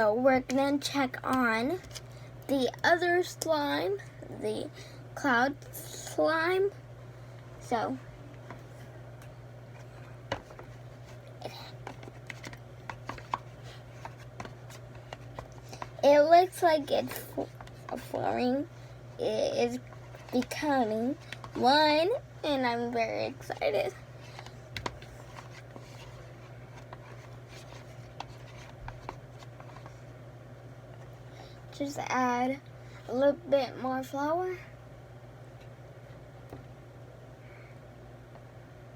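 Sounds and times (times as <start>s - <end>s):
steady low hum: 0.0s - 38.9s
slime being stirred in a bowl: 9.7s - 18.7s, 23.4s - 30.0s.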